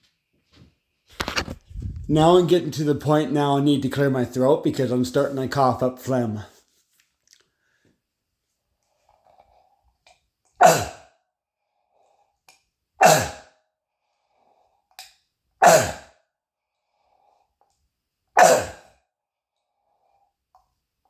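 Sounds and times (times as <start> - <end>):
man's harsh barking cough: 10.6 - 11.1, 13.0 - 13.5, 15.6 - 16.2, 18.4 - 19.0.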